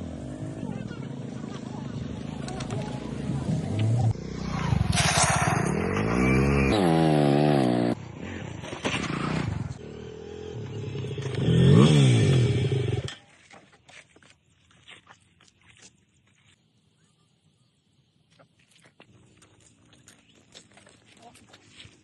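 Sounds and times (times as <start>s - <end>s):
engine revving: 3.4s - 8.0s, 8.9s - 13.1s.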